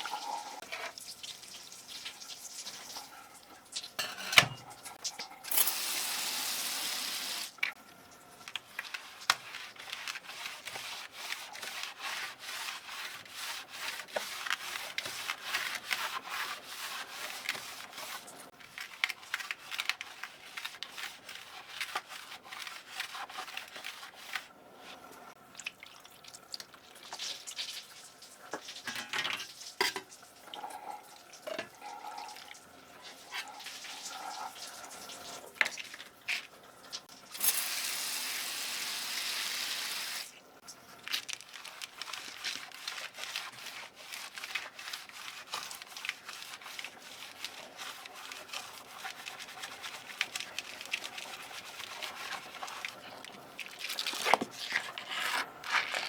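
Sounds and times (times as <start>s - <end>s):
brush rubbing strokes: 8.9s - 18.3s, 41.7s - 53.2s.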